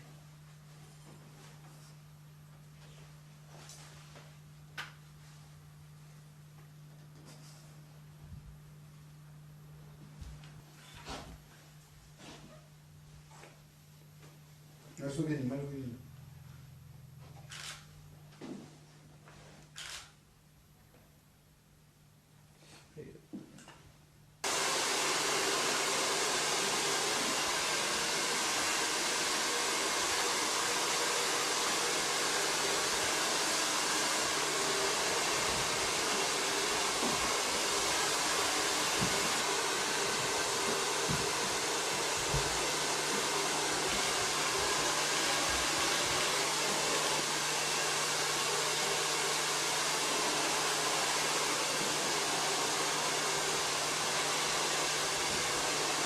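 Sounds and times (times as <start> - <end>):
hair dryer blowing: 24.4 - 56.0.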